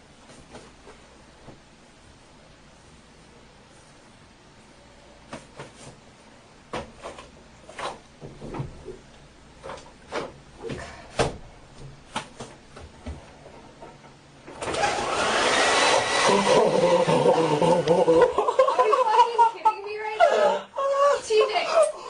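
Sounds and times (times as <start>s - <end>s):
hair dryer blowing: 14.6s - 18.0s.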